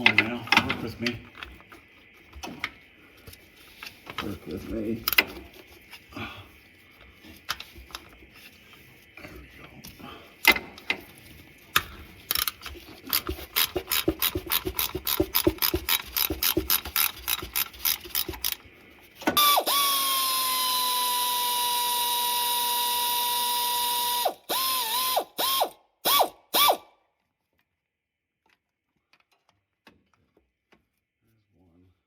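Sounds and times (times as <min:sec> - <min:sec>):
hand ratchet clicking: 0:12.3 - 0:18.6, 0:23.4 - 0:26.8.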